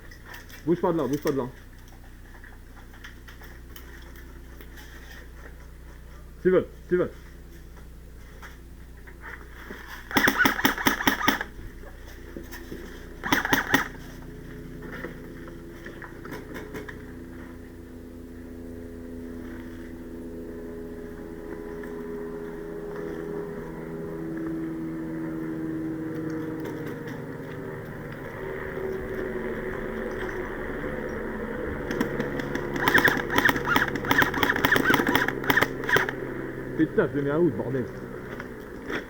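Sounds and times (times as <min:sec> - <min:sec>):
low hum with held tones: 0:00.0 - 0:39.0
airsoft gunfire bursts: 0:10.1 - 0:11.5, 0:13.2 - 0:14.0, 0:31.9 - 0:36.2.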